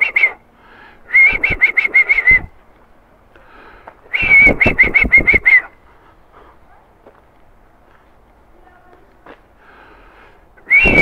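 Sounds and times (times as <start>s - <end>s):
person whistling short high notes: 0.0s - 0.4s, 1.1s - 2.5s, 4.1s - 5.7s, 10.7s - 11.0s.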